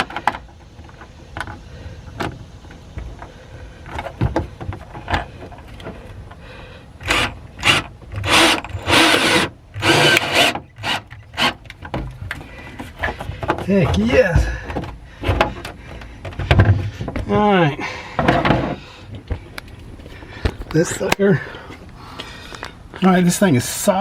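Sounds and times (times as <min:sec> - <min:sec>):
cordless drill driving screw: 0:07.0 - 0:11.6.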